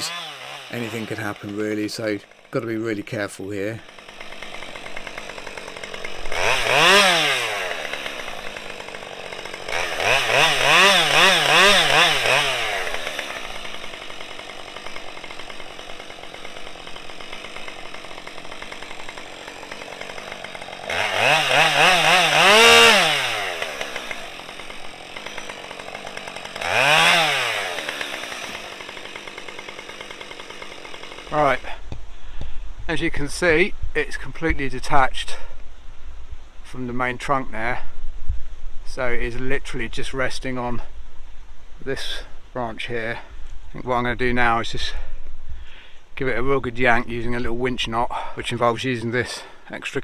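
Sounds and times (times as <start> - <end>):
chainsaw revving: 0.0 - 31.8.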